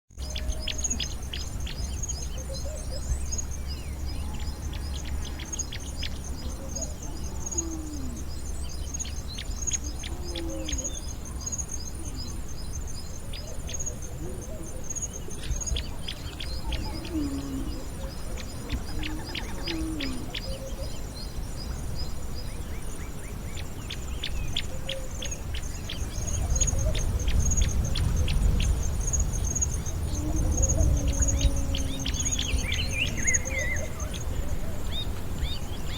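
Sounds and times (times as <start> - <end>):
birds chirping: 0.2 - 35.9
low falling bird calls: 24.1 - 35.9
high pulsing insect trill: 25.2 - 35.9.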